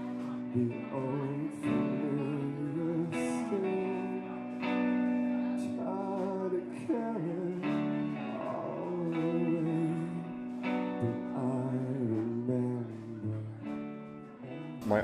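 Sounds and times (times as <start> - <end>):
man singing: 0.0 - 15.0
strummed acoustic guitar: 0.0 - 15.0.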